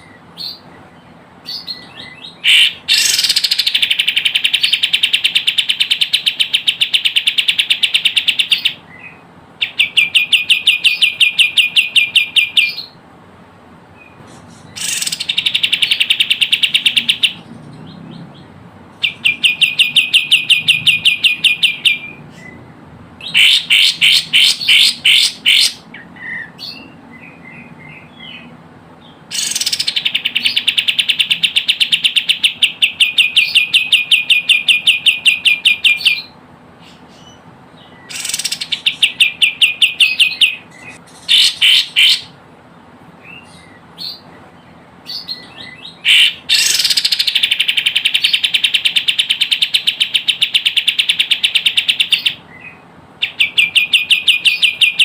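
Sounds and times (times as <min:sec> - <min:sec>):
bird song with fast sharp notes: 0:00.0 - 0:13.0, 0:13.9 - 0:55.0
soft bird chirps: 0:14.0 - 0:55.0.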